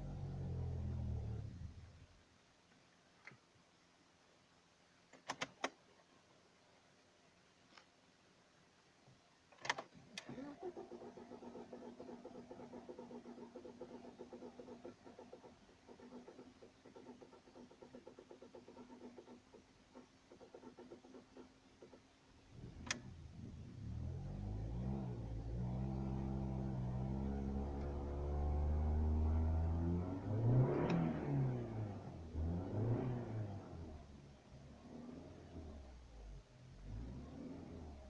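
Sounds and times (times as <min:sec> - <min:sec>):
engine running and revving: 0:00.0 - 0:01.8, 0:22.6 - 0:38.0
sharp click: 0:05.1 - 0:05.8
engine cranking on starter: 0:09.6 - 0:22.0.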